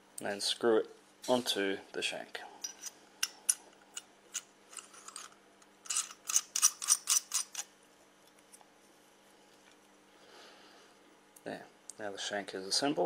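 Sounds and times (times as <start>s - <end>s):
nut screwing clicks and clinks: 2.6s - 7.7s.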